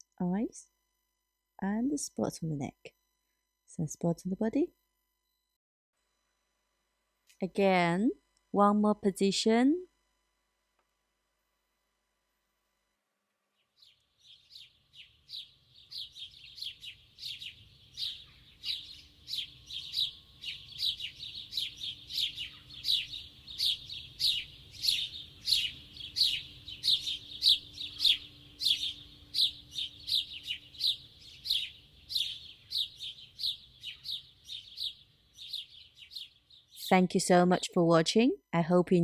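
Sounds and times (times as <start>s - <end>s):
small birds chirping: 13.5s - 37.0s.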